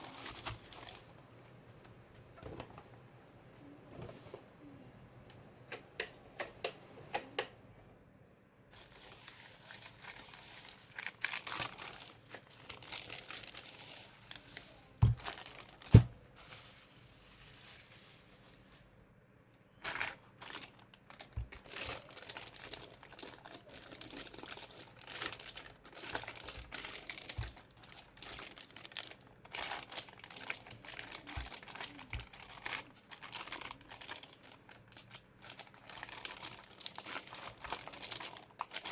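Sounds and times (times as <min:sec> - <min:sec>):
plastic packaging crinkling: 0:00.0 - 0:01.2, 0:08.7 - 0:18.9, 0:19.8 - 0:38.9.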